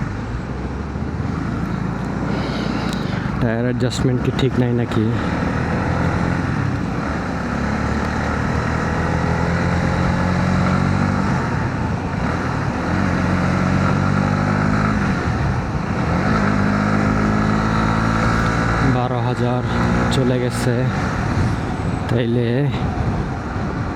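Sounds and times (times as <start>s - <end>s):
motorcycle engine running: 0.0s - 23.9s
wind on microphone: 20.9s - 23.9s.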